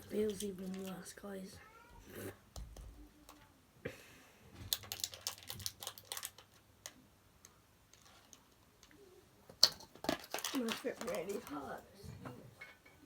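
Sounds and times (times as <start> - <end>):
small hard pieces clicking: 0.0 - 1.1, 4.7 - 7.0, 9.6 - 11.6.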